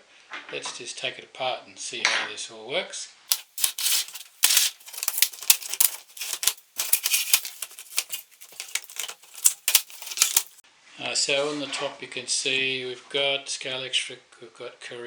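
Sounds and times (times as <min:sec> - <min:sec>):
plastic track pieces clicking: 0:03.3 - 0:10.6.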